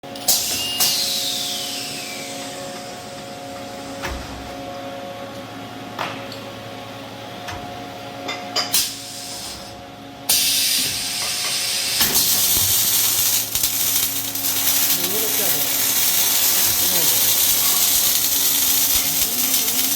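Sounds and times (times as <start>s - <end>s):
welding arc hissing: 0.3s - 3.0s, 8.8s - 19.9s
welding machine humming: 8.7s - 19.9s.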